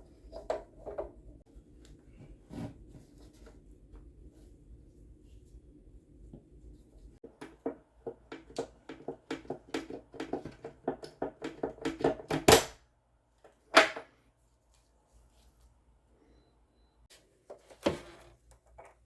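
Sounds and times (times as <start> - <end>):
hard parts clicking and tapping: 7.3 - 12.8.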